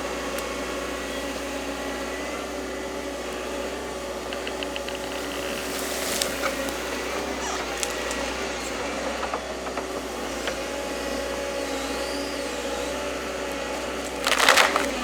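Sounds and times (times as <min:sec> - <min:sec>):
excavator engine and hydraulics: 0:00.0 - 0:15.0
faint clicks: 0:04.2 - 0:08.4.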